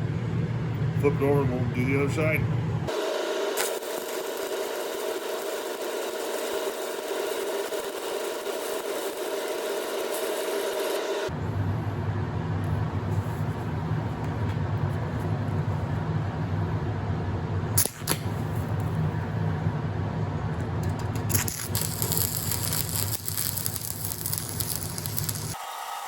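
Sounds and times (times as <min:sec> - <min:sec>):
welding arc crackling: 0:02.9 - 0:11.3, 0:20.8 - 0:26.0.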